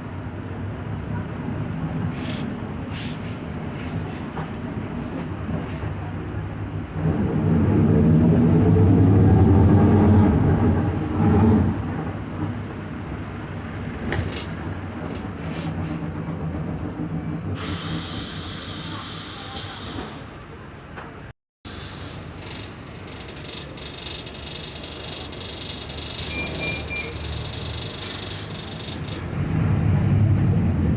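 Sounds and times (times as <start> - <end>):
diesel bus engine accelerating: 0.0 - 20.9, 21.7 - 30.9
compressed air hiss: 17.6 - 20.3, 21.7 - 22.5.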